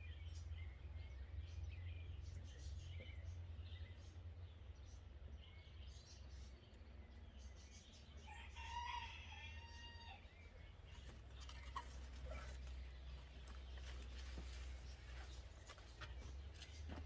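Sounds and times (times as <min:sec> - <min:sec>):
rooster crowing: 0:08.2 - 0:10.3.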